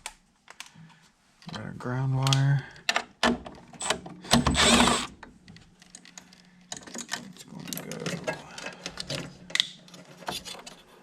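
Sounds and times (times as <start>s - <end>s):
small clicks and metallic rattles: 5.2s - 10.8s.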